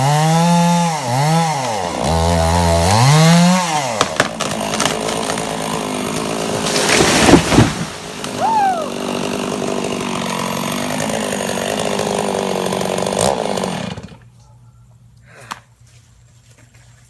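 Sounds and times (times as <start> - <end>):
chainsaw engine revving: 0.0 - 14.2
sharp cracks: 3.9 - 8.9.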